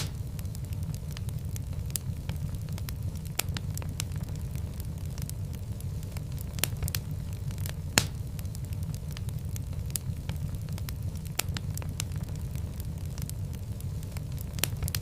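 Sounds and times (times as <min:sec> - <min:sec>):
fire crackling and popping: 0:00.0 - 0:15.0
low rumble of flames: 0:00.0 - 0:15.0.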